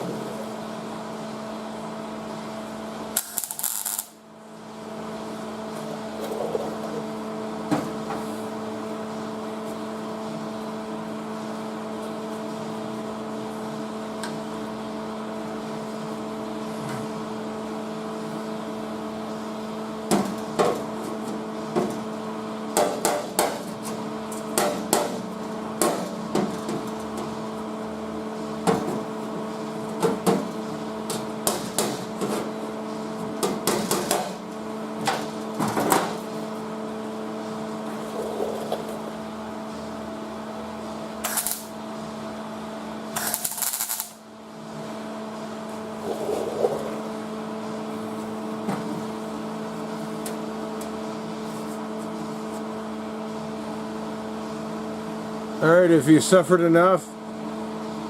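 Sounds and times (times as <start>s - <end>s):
electrical hum: 0.0s - 22.8s, 23.6s - 58.0s
welding bursts: 3.2s - 4.2s, 41.2s - 41.7s, 43.2s - 44.2s.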